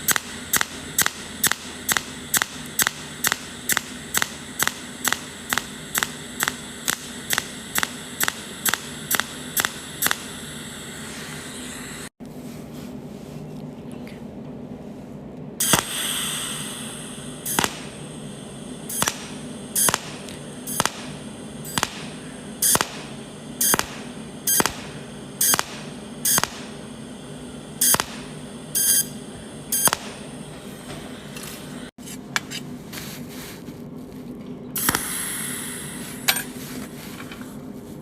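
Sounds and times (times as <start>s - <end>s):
sharp snapping weld pulses: 0.0s - 10.5s, 15.6s - 18.1s, 18.8s - 27.0s, 27.8s - 30.4s, 34.8s - 35.8s
low machine hum: 0.0s - 38.0s.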